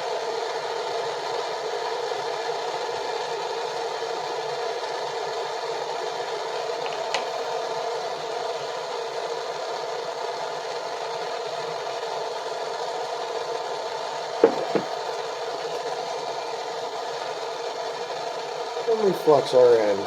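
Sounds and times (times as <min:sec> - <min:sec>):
propane torch flame hissing: 0:00.1 - 0:20.0
sharp knocks: 0:14.4 - 0:14.9.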